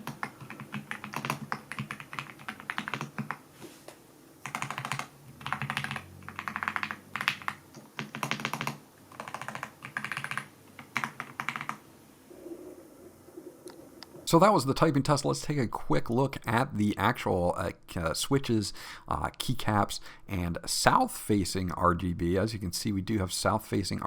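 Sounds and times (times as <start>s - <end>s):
mechanical keyboard typing: 0.0s - 3.4s, 4.4s - 11.8s.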